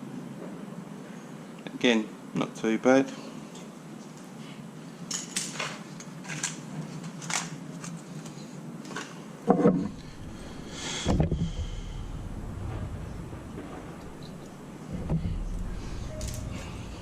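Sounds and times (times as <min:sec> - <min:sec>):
heavy metal knock: 0:09.8 - 0:17.0.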